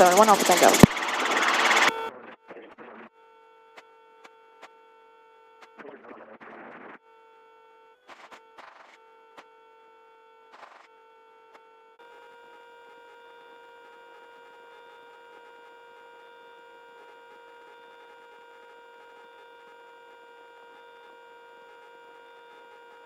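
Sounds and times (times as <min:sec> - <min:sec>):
steady electrical hum: 0:00.0 - 0:02.1.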